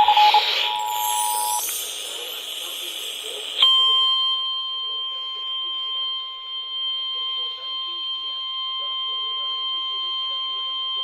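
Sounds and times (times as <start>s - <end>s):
two-tone alert signal: 0.0s - 1.9s
steady warning alarm tone: 0.0s - 11.0s
hiss: 0.2s - 3.6s.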